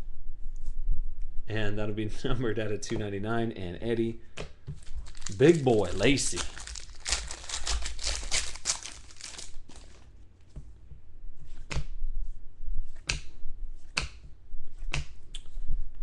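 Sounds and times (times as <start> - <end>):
foil wrapper crinkling and tearing: 4.8 - 10.1.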